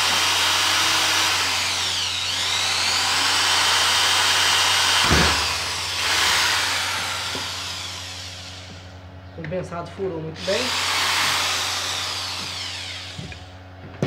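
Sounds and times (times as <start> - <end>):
drill motor whine drilling wood: 0.0 - 8.9, 10.4 - 13.6
thump: 5.0 - 5.5.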